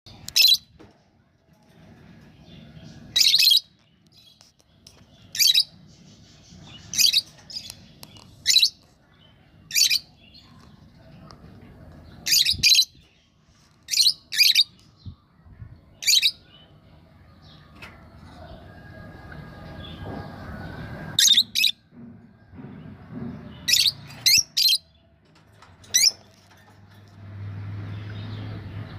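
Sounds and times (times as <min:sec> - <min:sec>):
soft bird chatter: 0:00.1 - 0:28.9
lovebirds chirping: 0:02.0 - 0:18.7.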